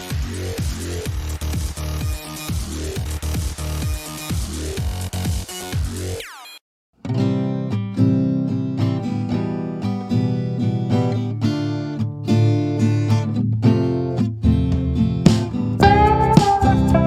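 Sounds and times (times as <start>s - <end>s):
acoustic guitar strummed and plucked: 7.0s - 17.0s.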